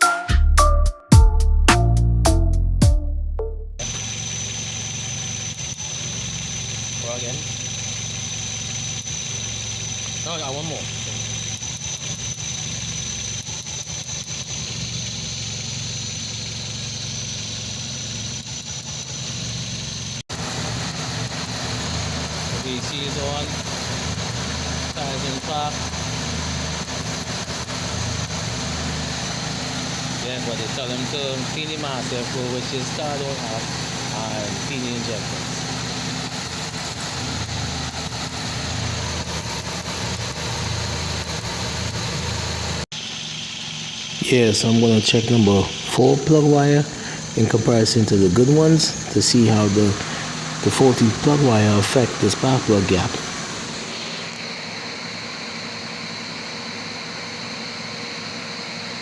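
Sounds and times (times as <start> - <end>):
sharp ticks: 3.8 - 20.0, 35.7 - 42.8
car engine idling with misfire: 3.8 - 59.0.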